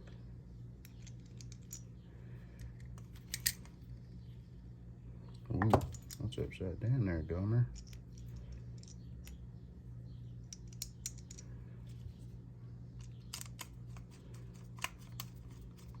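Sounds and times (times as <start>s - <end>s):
steady low hum: 0.0s - 16.0s
small metal parts clicking: 0.8s - 1.9s, 2.5s - 3.8s, 7.7s - 9.4s, 10.4s - 11.6s, 13.0s - 16.0s.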